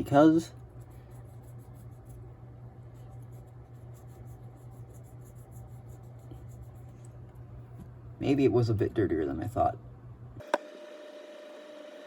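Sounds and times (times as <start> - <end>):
scratchy rubbing strokes: 0.0 - 7.2
steady low hum: 0.0 - 12.0.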